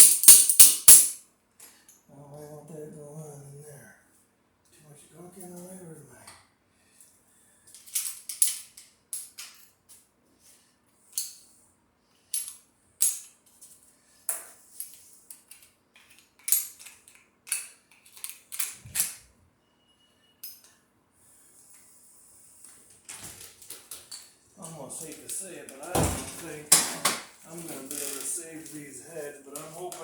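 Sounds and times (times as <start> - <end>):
metal tools clinking and scraping: 24.9 - 30.0.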